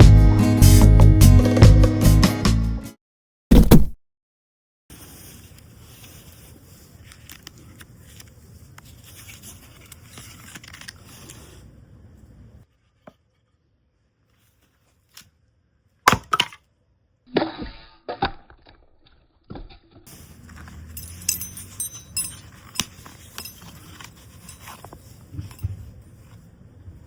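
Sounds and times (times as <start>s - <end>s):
hard objects clinking and knocking: 20.4s - 25.9s.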